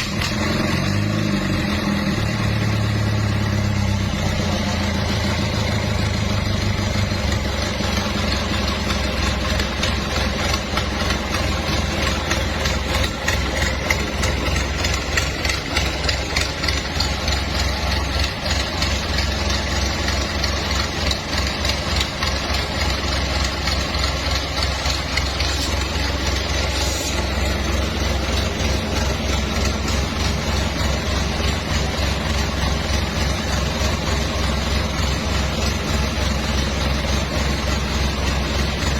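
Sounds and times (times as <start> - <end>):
diesel engine idling: 0.0 - 38.9.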